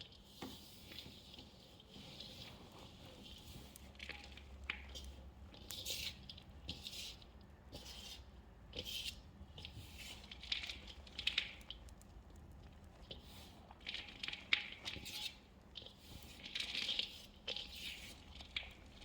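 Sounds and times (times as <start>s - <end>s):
hands squishing wet chalk paste: 0.0s - 19.0s.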